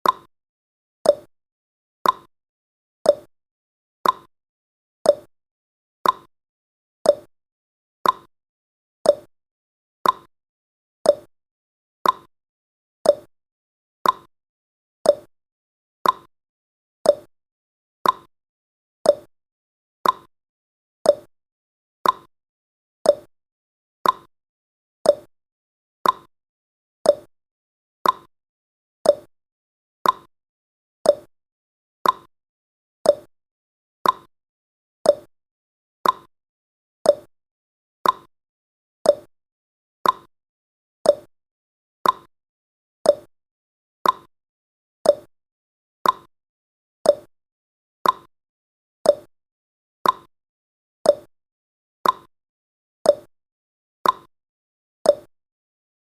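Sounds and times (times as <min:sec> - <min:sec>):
timer ticking: 0:00.0 - 0:00.3, 0:01.1 - 0:01.3, 0:02.0 - 0:02.3, 0:03.1 - 0:03.3, 0:04.0 - 0:04.3, 0:05.1 - 0:05.3, 0:06.0 - 0:06.3, 0:07.1 - 0:07.3, 0:08.0 - 0:08.3, 0:09.1 - 0:09.3, 0:10.0 - 0:10.3, 0:11.1 - 0:11.3, 0:12.0 - 0:12.3, 0:13.1 - 0:13.3, 0:14.0 - 0:14.3, 0:15.1 - 0:15.3, 0:16.0 - 0:16.3, 0:17.1 - 0:17.3, 0:18.0 - 0:18.3, 0:19.1 - 0:19.3, 0:20.0 - 0:20.3, 0:21.1 - 0:21.3, 0:22.0 - 0:22.3, 0:23.1 - 0:23.3, 0:24.0 - 0:24.3, 0:25.1 - 0:25.3, 0:26.0 - 0:26.3, 0:27.1 - 0:27.3, 0:28.0 - 0:28.3, 0:29.0 - 0:29.3, 0:30.0 - 0:30.3, 0:31.0 - 0:31.3, 0:32.0 - 0:32.3, 0:33.1 - 0:33.3, 0:34.0 - 0:34.3, 0:35.1 - 0:35.3, 0:36.0 - 0:36.3, 0:37.1 - 0:37.3, 0:38.0 - 0:38.3, 0:39.1 - 0:39.3, 0:40.0 - 0:40.3, 0:41.1 - 0:41.3, 0:42.0 - 0:42.3, 0:43.1 - 0:43.3, 0:44.0 - 0:44.3, 0:45.0 - 0:45.3, 0:46.0 - 0:46.3, 0:47.1 - 0:47.3, 0:48.0 - 0:48.3, 0:49.1 - 0:49.3, 0:50.0 - 0:50.3, 0:51.1 - 0:51.3, 0:52.0 - 0:52.3, 0:53.1 - 0:53.3, 0:54.0 - 0:54.3, 0:55.1 - 0:55.3.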